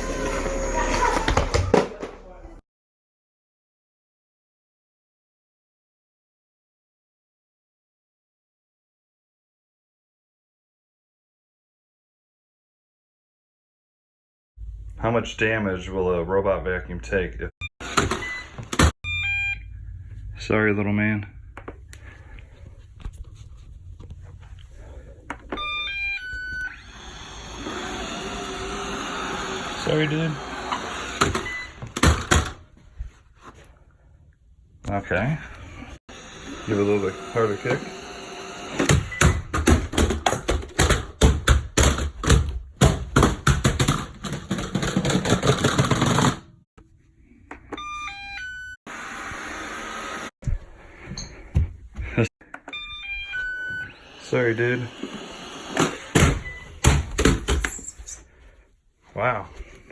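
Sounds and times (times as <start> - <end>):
robot vacuum clattering down stairs: 38.8 - 46.5
robot vacuum electronic chime: 52.7 - 55.5.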